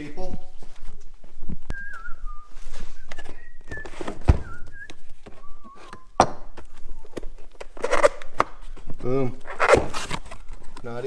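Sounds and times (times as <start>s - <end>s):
thin wavering whistled tone: 1.7s - 6.2s
engine parts and boxes being set down: 3.7s - 4.8s.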